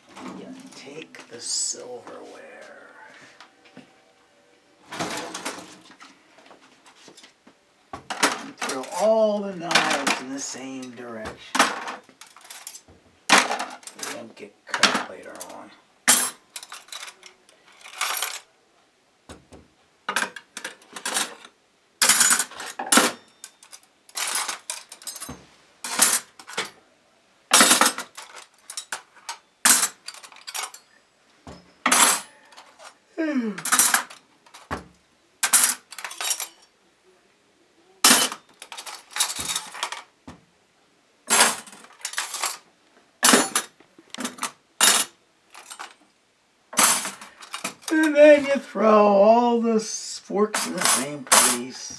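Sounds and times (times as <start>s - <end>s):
metal cutlery clinking: 11.6s - 14.2s, 14.8s - 18.5s, 20.1s - 26.8s, 27.5s - 33.0s, 33.6s - 34.7s, 35.4s - 36.7s, 38.0s - 40.1s, 41.3s - 46.0s, 46.8s - 48.2s, 50.5s - 51.9s.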